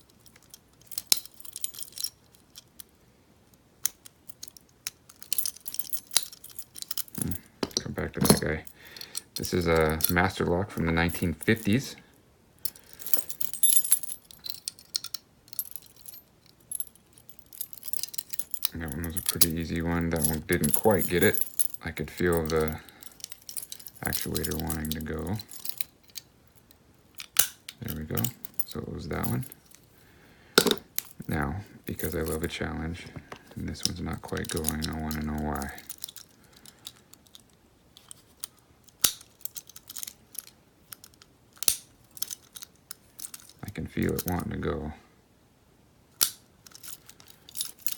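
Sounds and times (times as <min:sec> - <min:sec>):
lock picks clinking in padlock: 0:00.0 - 0:03.0, 0:03.8 - 0:11.8, 0:12.7 - 0:29.9, 0:33.2 - 0:44.6, 0:46.2 - 0:47.9
sharp padlock clicks: 0:27.2 - 0:27.8, 0:38.9 - 0:43.6, 0:46.2 - 0:47.9.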